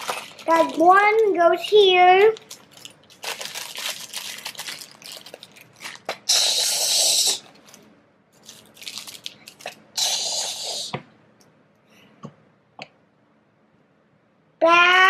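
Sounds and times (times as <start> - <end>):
plastic bricks pouring out: 0.0 - 1.0
plastic bag crinkling: 0.0 - 6.6, 7.3 - 10.0.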